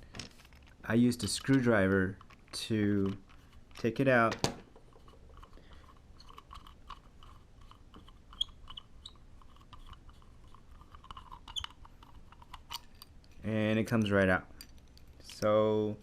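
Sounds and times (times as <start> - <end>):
screwdriver scraping and clicking: 0.3 - 15.5.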